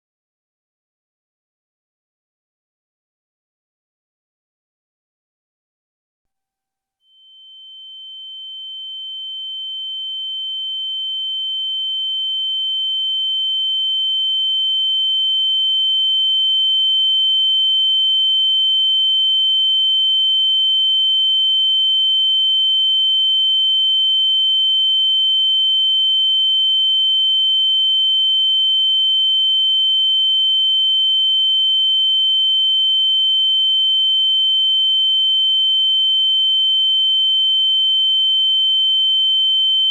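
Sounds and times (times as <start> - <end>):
steady high-pitched sine tone: 7.1 - 39.9.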